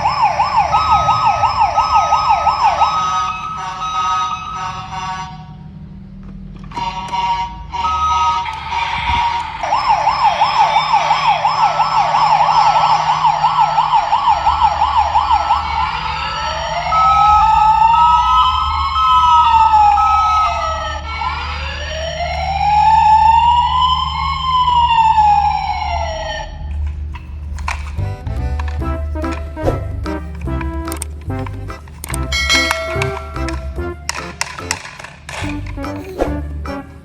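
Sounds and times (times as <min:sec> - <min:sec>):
toy electronic siren: 0:00.0 - 0:05.6, 0:06.7 - 0:26.7.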